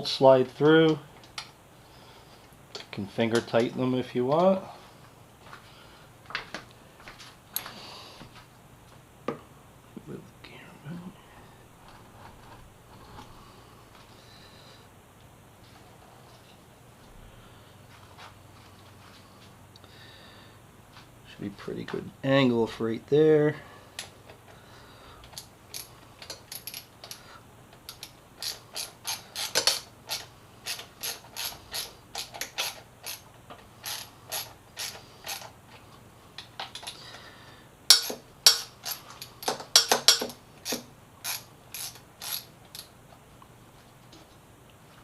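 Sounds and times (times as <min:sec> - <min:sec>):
ratchet wrench clicking: 0:27.9 - 0:33.2, 0:33.8 - 0:35.5, 0:37.9 - 0:42.9.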